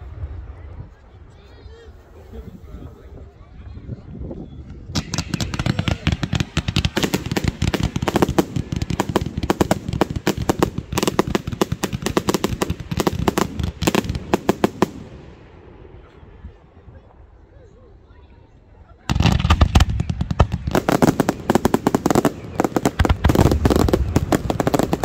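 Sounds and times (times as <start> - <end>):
fireworks barrage bangs: 4.9 - 15.9, 19.1 - 25.0.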